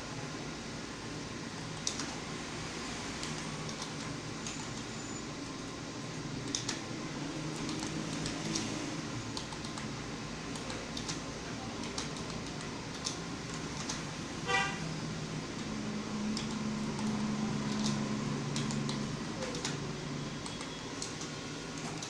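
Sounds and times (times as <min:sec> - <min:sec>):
keyboard typing: 0:01.7 - 0:02.2, 0:03.2 - 0:05.8, 0:06.4 - 0:14.2, 0:14.8 - 0:22.0
horn toot: 0:14.4 - 0:14.9.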